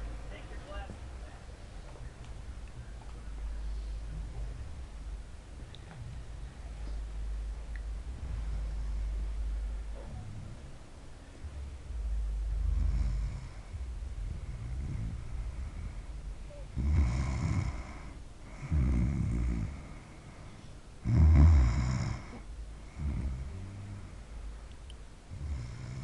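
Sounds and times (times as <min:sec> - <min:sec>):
woman snoring: 0:16.7 - 0:20.0, 0:21.0 - 0:24.2, 0:25.3 - 0:26.0.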